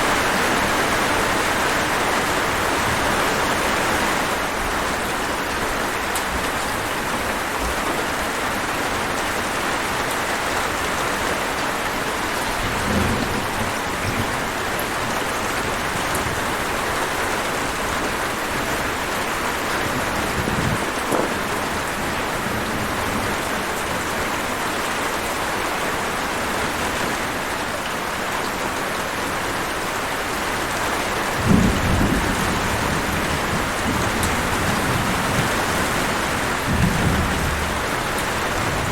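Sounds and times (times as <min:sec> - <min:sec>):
heavy rain falling: 0:00.0 - 0:38.9
thunder rumbling: 0:12.3 - 0:24.0, 0:31.3 - 0:38.9.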